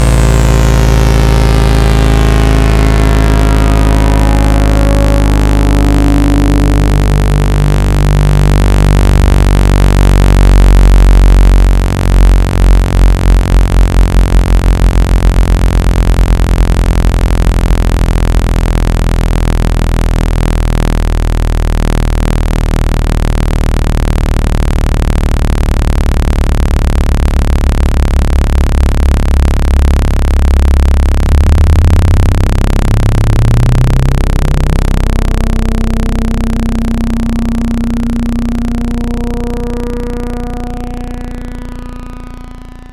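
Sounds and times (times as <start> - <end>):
low electronic hum tones: 0.0 - 42.9.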